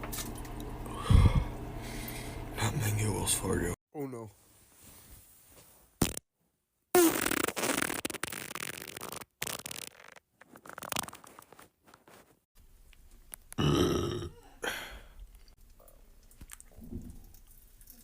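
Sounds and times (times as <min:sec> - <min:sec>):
person farting: 0:06.0 - 0:06.2, 0:07.0 - 0:11.3, 0:13.5 - 0:14.4.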